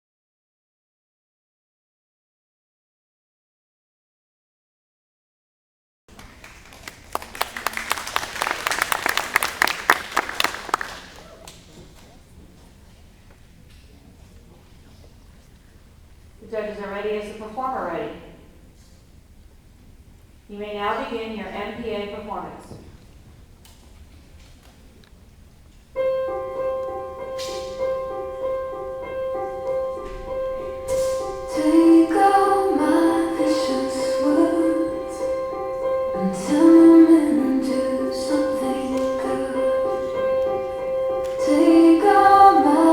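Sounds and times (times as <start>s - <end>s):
audience applauding: 6.1s - 12.1s
long held tone: 26.0s - 42.9s
slow instrumental melody: 26.0s - 42.9s.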